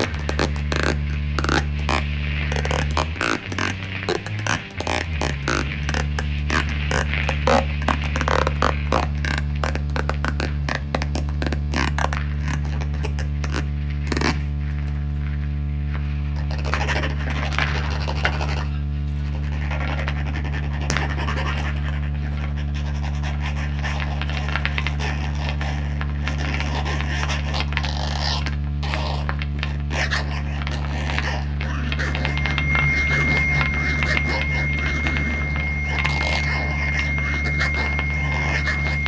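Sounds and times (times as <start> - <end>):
low electronic drone: 0.0 - 12.8, 30.5 - 39.0
scratching and scraping sounds: 0.0 - 39.0.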